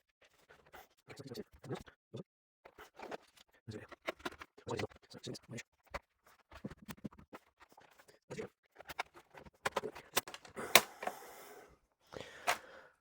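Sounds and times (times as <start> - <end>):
plastic clips popping loose: 9.6 - 11.2, 12.4 - 12.7
sharp plastic snap: 9.7 - 11.2.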